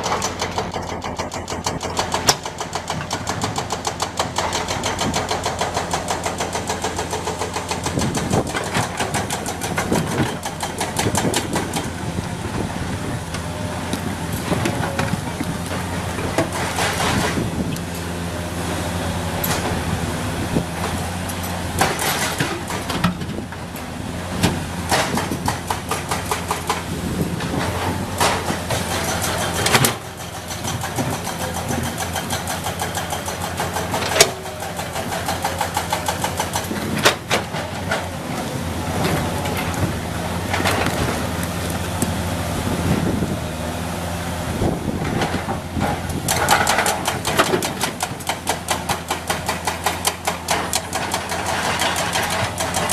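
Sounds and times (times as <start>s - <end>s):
sharp knocks and metallic rattles: 0.0s - 12.2s, 20.8s - 23.6s, 24.4s - 38.2s, 45.0s - 52.9s
diesel engine running: 0.0s - 52.9s.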